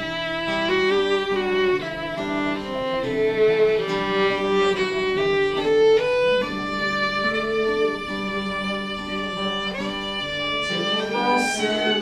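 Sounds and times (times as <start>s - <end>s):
slow instrumental worship music: 0.0s - 12.0s
string-like melody over chords: 0.0s - 12.0s.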